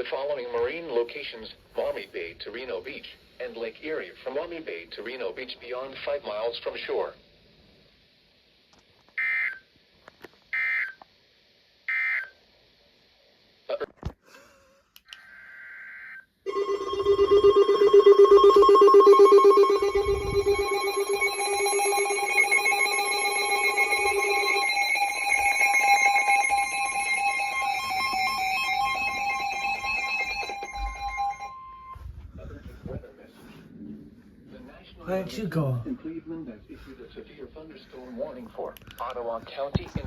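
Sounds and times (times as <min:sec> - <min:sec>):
loud steady alert tone: 0:16.5 - 0:32.0.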